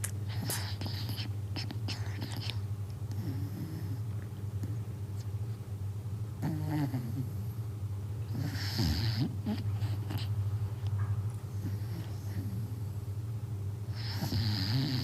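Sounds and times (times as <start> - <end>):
dog snoring: 0.3 - 4.8, 6.4 - 7.6, 8.3 - 10.3, 11.5 - 12.8, 13.9 - 15.0
dog snorting: 0.3 - 4.8, 6.4 - 7.5, 8.3 - 10.4, 13.9 - 15.0.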